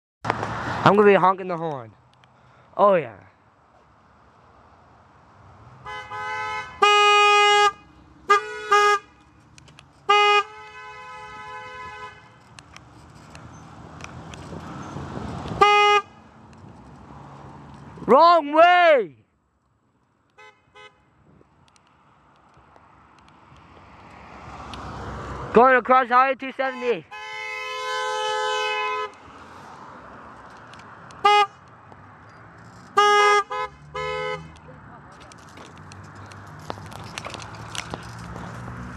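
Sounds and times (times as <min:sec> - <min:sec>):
road noise: 0:00.2 - 0:38.9
car horn honking: 0:05.8 - 0:09.4, 0:10.0 - 0:12.4, 0:15.5 - 0:16.4, 0:20.4 - 0:21.1, 0:26.5 - 0:29.2, 0:31.2 - 0:31.6, 0:32.8 - 0:34.6.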